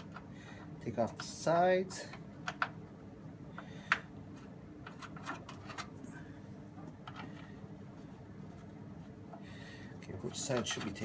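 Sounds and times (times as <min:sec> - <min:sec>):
light clicks and scrapes of pc case: 0:03.6 - 0:06.0, 0:10.1 - 0:11.0.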